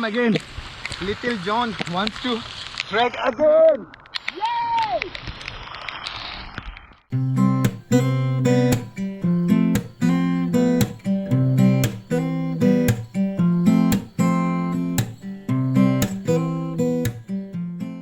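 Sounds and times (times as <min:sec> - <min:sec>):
acoustic guitar strumming: 0:07.1 - 0:18.0.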